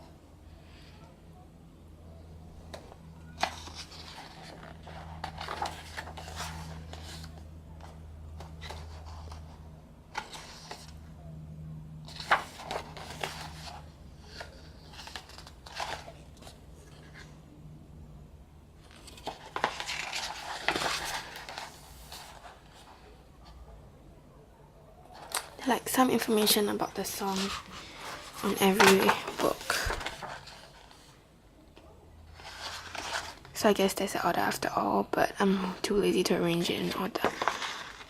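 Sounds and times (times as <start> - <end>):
paper rustling and shuffling: 2.7 - 11.0, 12.0 - 17.4, 18.8 - 23.6, 25.1 - 31.2, 32.3 - 34.0, 35.5 - 38.0.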